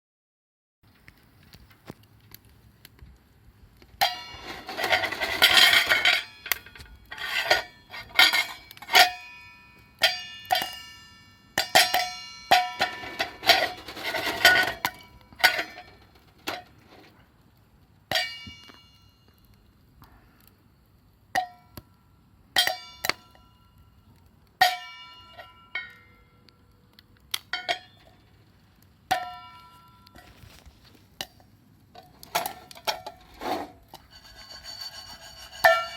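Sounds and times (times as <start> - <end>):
metal rattling: 4.0 - 9.2, 12.6 - 16.8
metal objects clinking and clanking: 4.0 - 9.4, 10.0 - 17.1, 32.0 - 35.9.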